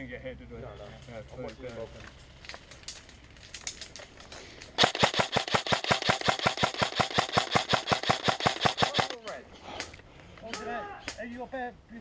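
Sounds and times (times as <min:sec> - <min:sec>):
airsoft rifle full-auto burst: 0:04.8 - 0:09.2.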